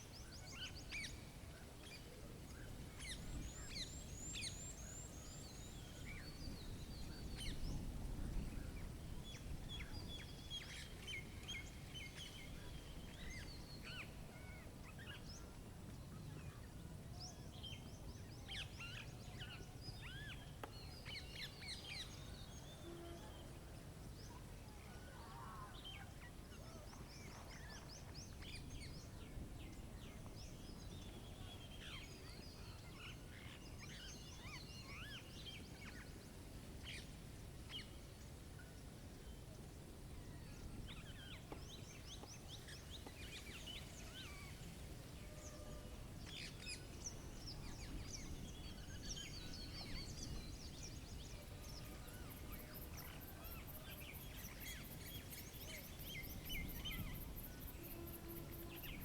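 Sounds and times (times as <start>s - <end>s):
small songbirds chirping: 0.0s - 59.0s
wind noise: 2.3s - 18.7s, 42.9s - 59.0s.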